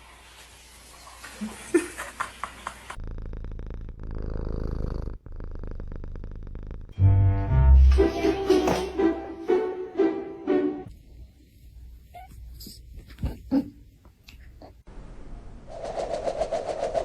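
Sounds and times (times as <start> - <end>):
cat purring: 2.9 - 7.0.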